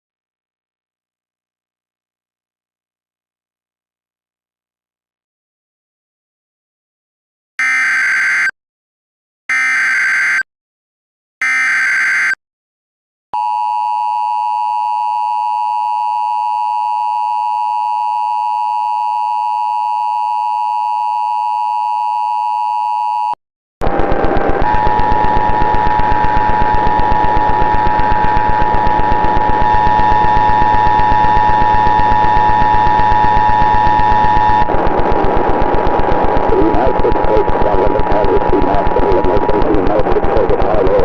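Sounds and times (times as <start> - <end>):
two-tone attention signal: 7.6 - 8.5, 9.5 - 10.4, 11.4 - 12.4
warbling data tones: 7.6 - 8.5, 9.5 - 10.4, 11.4 - 12.4, 24.7 - 41.0
rapidly pulsing noisy buzz: 23.8 - 41.0.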